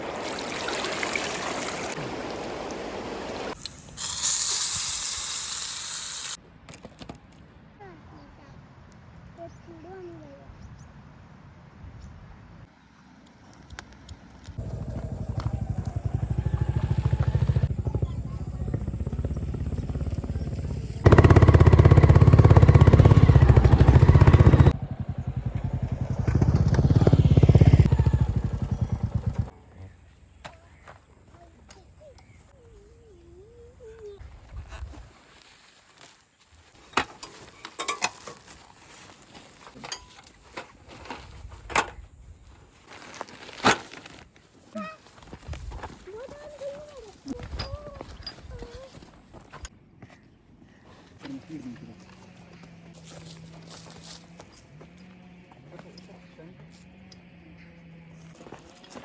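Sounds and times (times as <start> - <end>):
river water rushing: 0.0 - 3.6
high steady hiss: 2.1 - 6.4
vehicle engine running: 14.5 - 29.6.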